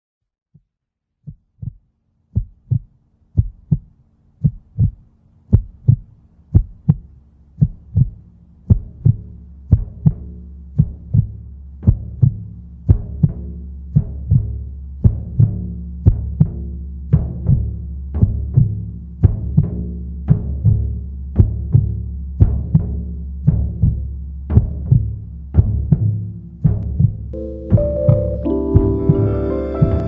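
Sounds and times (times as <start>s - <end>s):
heartbeat thumps: 0.6s - 30.0s
low musical drone: 27.4s - 30.0s.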